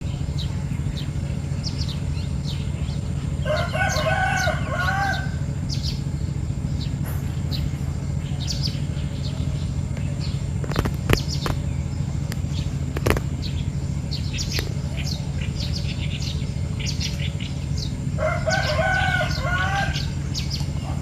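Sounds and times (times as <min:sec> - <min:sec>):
low rumble: 0:00.0 - 0:21.0
small bird chirps: 0:00.0 - 0:21.0
rooster crowing: 0:03.4 - 0:06.0, 0:18.1 - 0:20.6.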